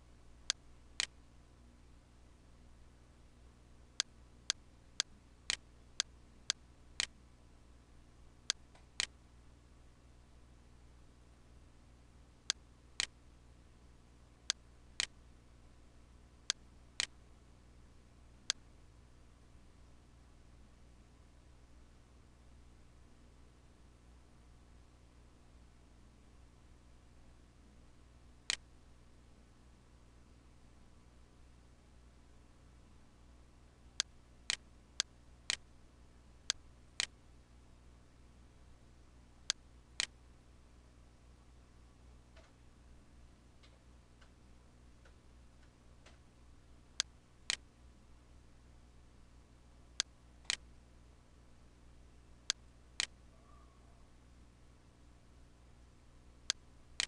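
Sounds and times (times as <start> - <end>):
low steady hum: 0.0 - 57.0
computer mouse clicks: 0.5 - 1.2, 8.5 - 9.2, 36.5 - 37.2, 39.4 - 40.2, 50.0 - 50.6, 52.5 - 53.2.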